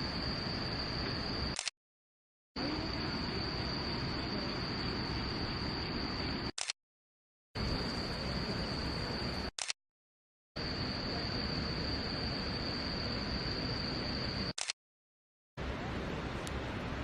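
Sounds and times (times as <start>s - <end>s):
high-pitched insect trill: 2.6s - 6.5s, 10.6s - 14.6s.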